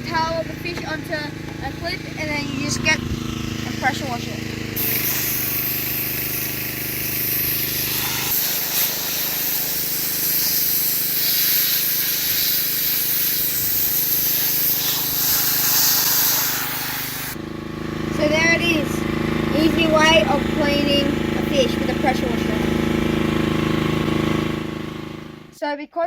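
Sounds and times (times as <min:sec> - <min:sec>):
pressure washer machine hum: 0:00.0 - 0:25.6
pressure washer spray hissing: 0:03.5 - 0:17.4.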